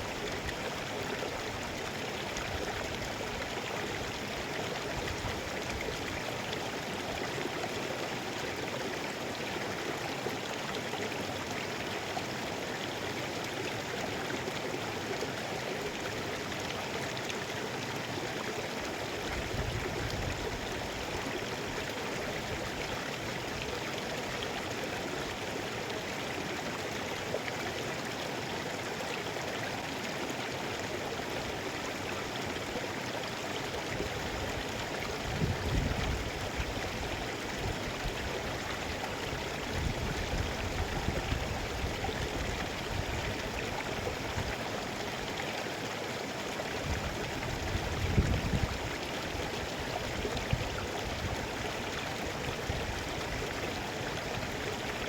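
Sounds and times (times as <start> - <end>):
river water rushing over rocks: 0.0 - 55.0.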